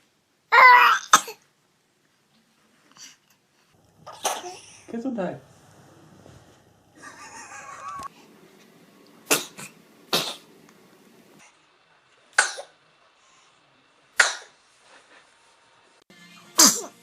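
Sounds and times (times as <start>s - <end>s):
baby sneezes: 14.2s - 14.6s, 16.6s - 17.0s.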